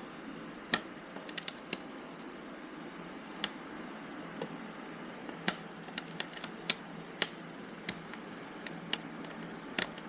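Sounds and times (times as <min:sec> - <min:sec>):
steady low hiss: 0:00.0 - 0:10.0
plastic parts clicking: 0:00.7 - 0:01.8, 0:05.3 - 0:10.0.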